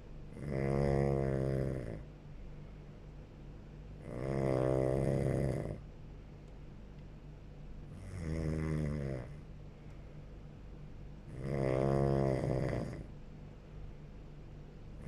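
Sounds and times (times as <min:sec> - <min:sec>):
person snoring: 0:00.3 - 0:02.0, 0:04.0 - 0:05.8, 0:08.0 - 0:09.4, 0:11.3 - 0:13.1
quiet breathing: 0:09.3 - 0:10.4.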